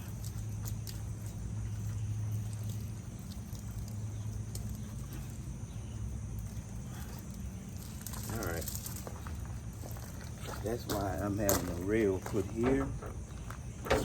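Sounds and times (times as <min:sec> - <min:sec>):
engine humming: 0:00.0 - 0:14.0.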